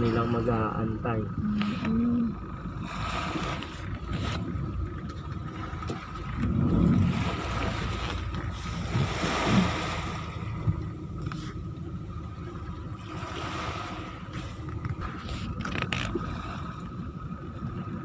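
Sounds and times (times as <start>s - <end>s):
vehicle engine running: 1.4s - 15.7s
wind noise: 3.9s - 11.4s.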